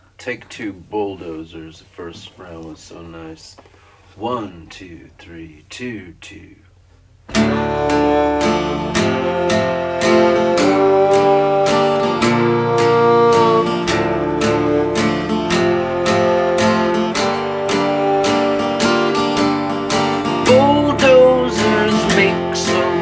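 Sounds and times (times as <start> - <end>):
acoustic guitar strumming: 7.3 - 23.0
violin long held notes: 7.3 - 23.0.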